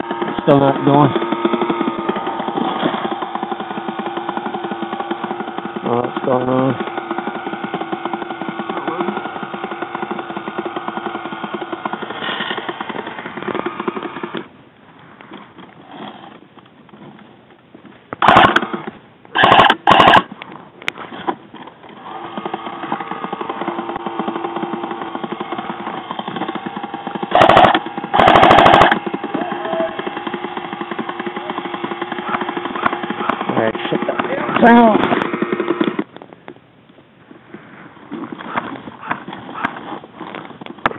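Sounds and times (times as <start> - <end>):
steady hum: 0.0 - 16.3
airsoft gun bursts: 18.2 - 20.3, 22.0 - 36.1.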